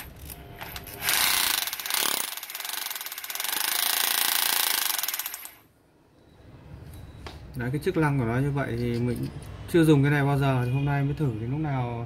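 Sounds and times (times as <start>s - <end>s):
hammer drill hammering: 1.0s - 5.6s.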